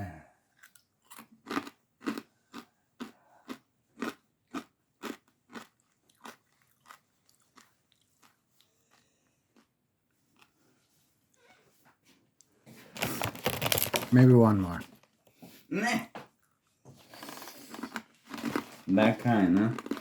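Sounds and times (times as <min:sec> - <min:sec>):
chewing crunchy pork rinds: 0:00.5 - 0:10.6, 0:17.1 - 0:20.0.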